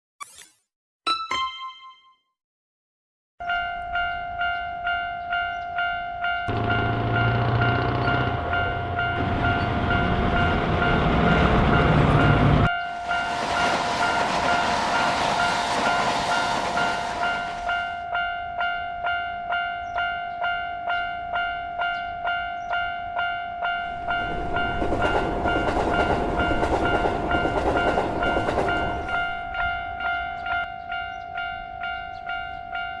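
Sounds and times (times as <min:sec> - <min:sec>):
railroad crossing alarm ringing: 0:03.4 - 0:33.0
trains rumbling past: 0:06.5 - 0:18.0, 0:23.7 - 0:30.3.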